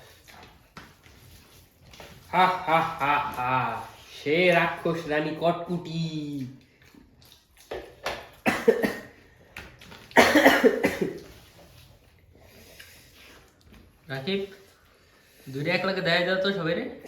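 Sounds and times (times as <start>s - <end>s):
person coughing: 8.4s - 9.2s, 10.1s - 11.2s.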